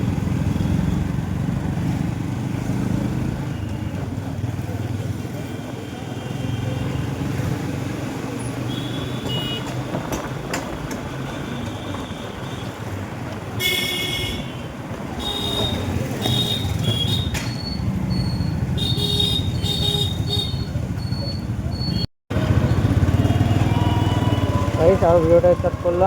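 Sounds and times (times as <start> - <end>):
motorcycle engine and road noise: 0.0 - 26.0
vehicle horns honking: 8.7 - 9.8, 13.6 - 17.5, 18.7 - 20.8, 23.0 - 25.0.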